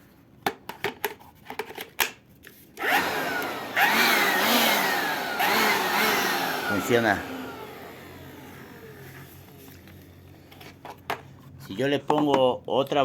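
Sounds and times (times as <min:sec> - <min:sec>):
blower motor whining: 0:02.8 - 0:10.6.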